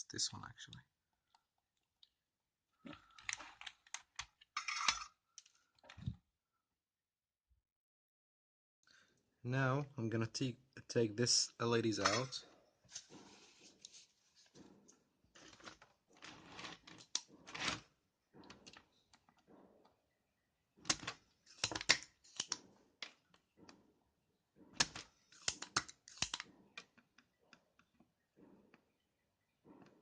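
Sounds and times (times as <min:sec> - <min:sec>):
plastic keyboard clicks and clatter: 0:02.9 - 0:06.2, 0:15.4 - 0:19.5, 0:20.8 - 0:23.8, 0:24.7 - 0:28.0.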